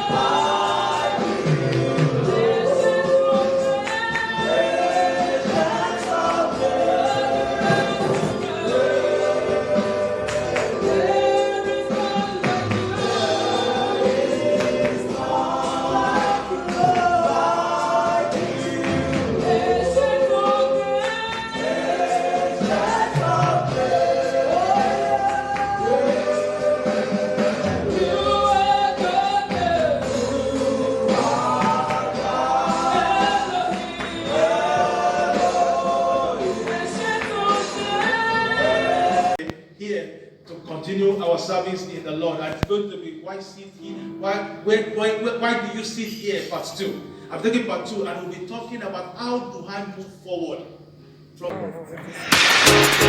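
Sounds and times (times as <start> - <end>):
gospel choir singing: 0.0 - 39.5
instrumental accompaniment: 51.9 - 53.0.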